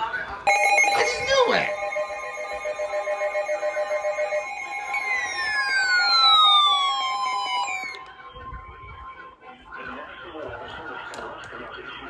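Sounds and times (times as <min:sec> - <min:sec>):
fast pulsing alarm: 0:00.5 - 0:08.0
steady high alarm tone: 0:00.5 - 0:08.1
siren-like tone falling in pitch: 0:00.5 - 0:08.2.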